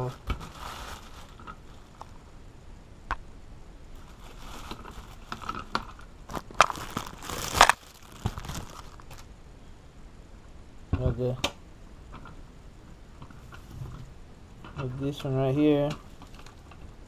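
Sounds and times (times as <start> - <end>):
plastic packaging crinkling: 0.0 - 2.2, 4.0 - 9.3, 16.1 - 16.8.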